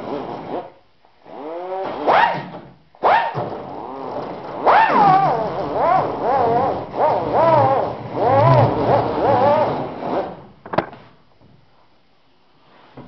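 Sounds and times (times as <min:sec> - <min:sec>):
rotary tool whining: 0:03.2 - 0:10.5.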